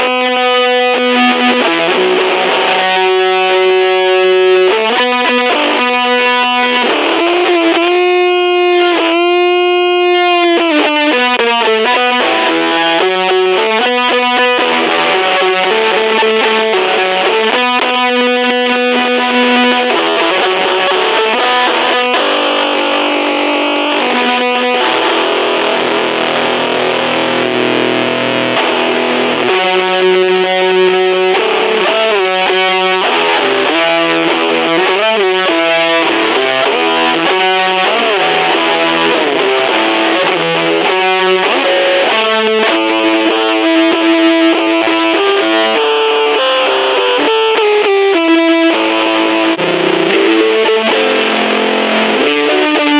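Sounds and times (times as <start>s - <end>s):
distorted electric guitar: 0.0s - 52.9s.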